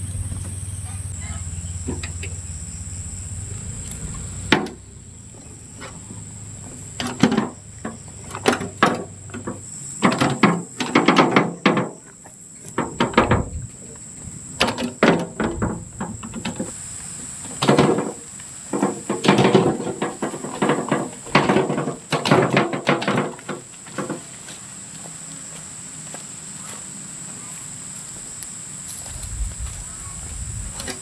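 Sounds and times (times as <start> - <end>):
night insects droning: 0.0 - 31.0
objects knocking and clattering: 7.0 - 12.1, 12.7 - 13.7, 14.6 - 16.7, 17.5 - 24.3.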